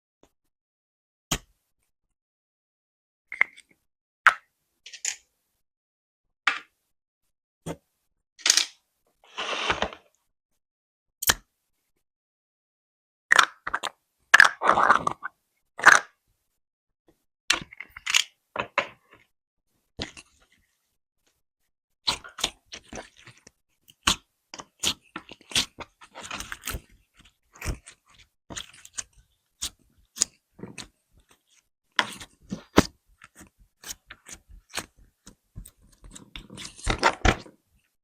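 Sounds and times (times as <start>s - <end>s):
squishy slime sounds: 22.1s - 37.0s.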